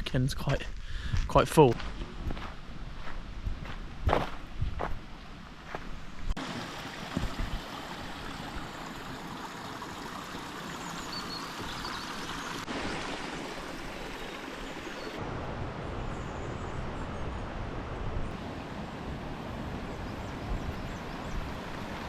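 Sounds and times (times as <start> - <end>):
footsteps: 0.4 - 5.0
waterfall rushing: 6.4 - 15.4.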